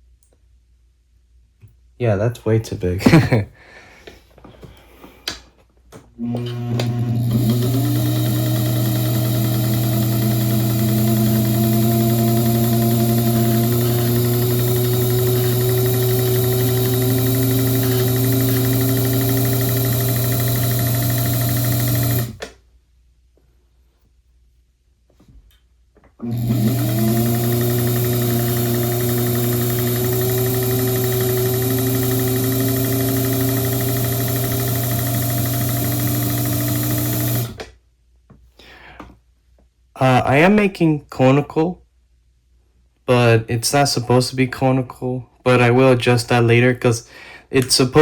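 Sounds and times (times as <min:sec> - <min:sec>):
electric motor humming: 0:06.2 - 0:22.5, 0:26.2 - 0:37.6
fine even rattle: 0:06.3 - 0:22.4, 0:26.3 - 0:37.6.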